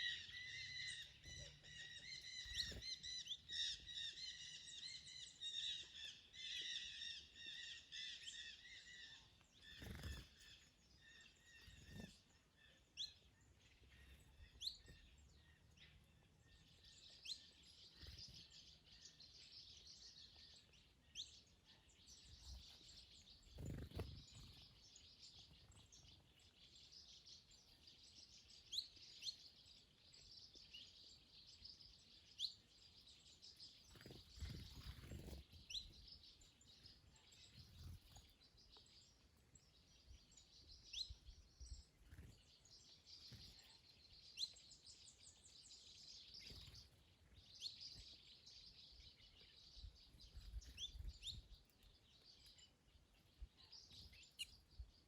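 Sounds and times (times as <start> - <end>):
birds chirping: 0.0 - 55.0.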